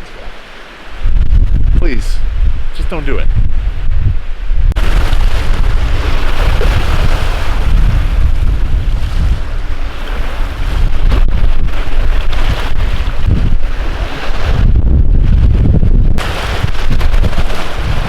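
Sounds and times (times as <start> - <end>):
gusty wind buffeting microphone: 0.9 - 18.0
waves washing on shore: 4.8 - 18.0
deep rumble: 12.8 - 18.0.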